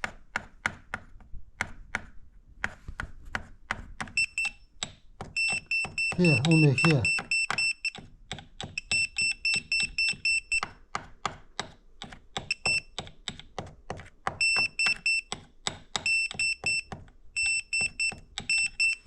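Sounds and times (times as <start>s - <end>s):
short high-pitched beeps: 4.2s - 4.6s, 5.4s - 8.0s, 8.8s - 10.6s, 12.5s - 12.9s, 14.4s - 15.3s, 16.1s - 19.0s.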